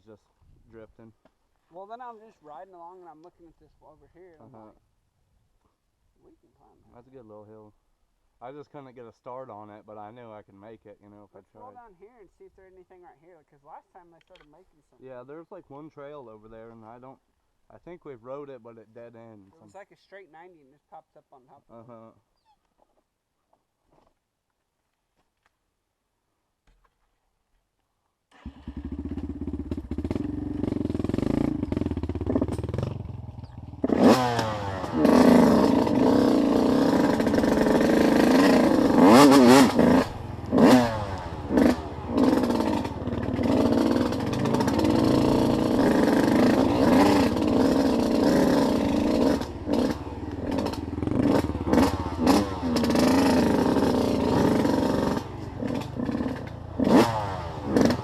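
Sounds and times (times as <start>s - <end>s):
off-road vehicle engine revving: 28.4s - 58.0s.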